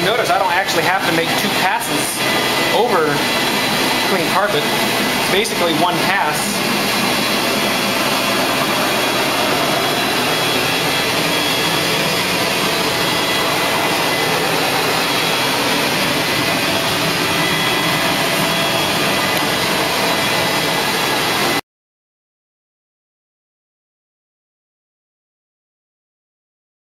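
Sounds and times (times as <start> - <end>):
vacuum suction rushing: 0.4 - 21.6.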